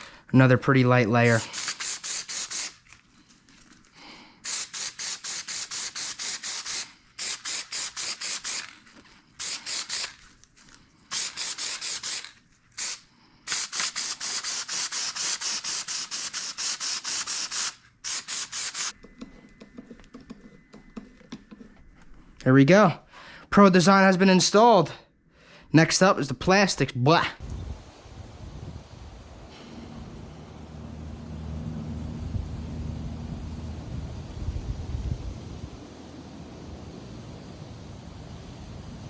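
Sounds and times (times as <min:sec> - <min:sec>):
rapid hand rubbing strokes: 0:01.2 - 0:03.0, 0:04.4 - 0:10.3, 0:11.1 - 0:19.0.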